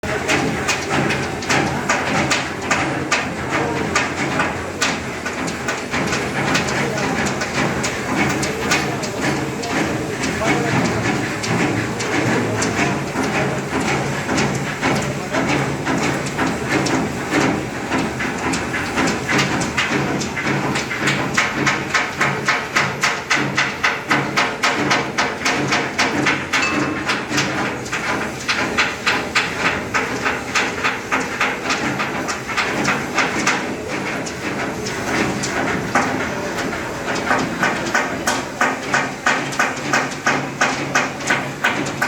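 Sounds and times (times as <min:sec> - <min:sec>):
hammers striking steel: 0:20.8 - 0:34.3.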